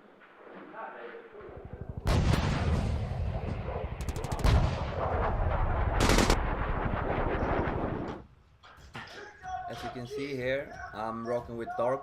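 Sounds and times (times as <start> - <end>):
rapid automatic gunfire: 4.0 - 4.6, 6.0 - 6.4.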